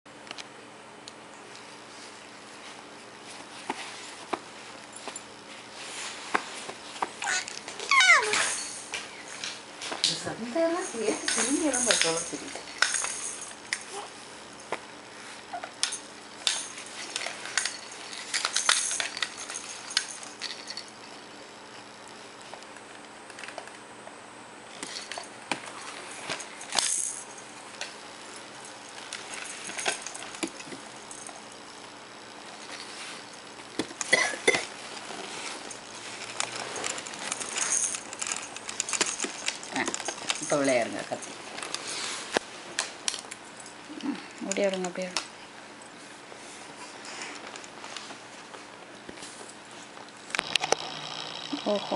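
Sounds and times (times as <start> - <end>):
small hard objects clinking: 7.2 - 14.0.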